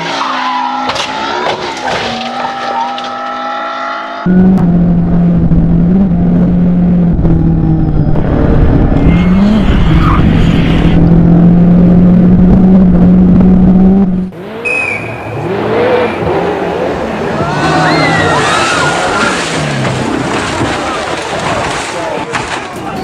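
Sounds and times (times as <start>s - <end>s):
tyre and road noise: 0.0s - 23.0s
rally car engine at high revs: 4.2s - 21.9s.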